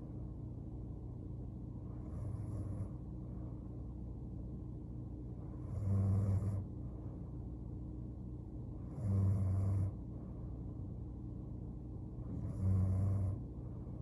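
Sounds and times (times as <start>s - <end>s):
steady low hum: 0.0s - 14.0s
woman snoring: 5.6s - 6.6s, 8.9s - 9.9s, 12.3s - 13.4s.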